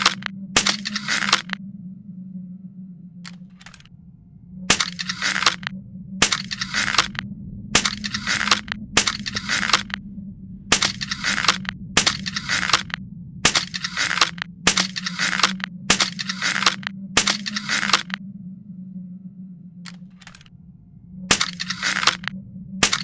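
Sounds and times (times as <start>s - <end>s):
crossbow shots with sharp click: 0.0s - 1.6s, 21.3s - 23.0s
steady low hum: 0.0s - 23.0s.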